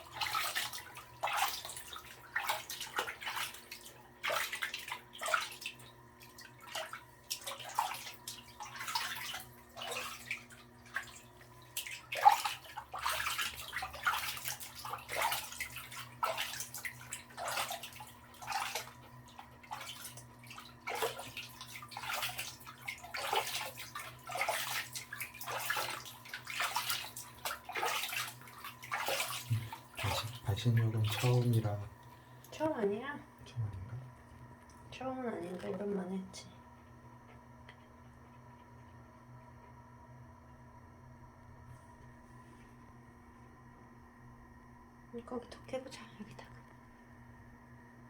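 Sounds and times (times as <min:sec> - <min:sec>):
bathwater splashing: 0:00.0 - 0:36.2
faint hum: 0:00.0 - 0:48.0.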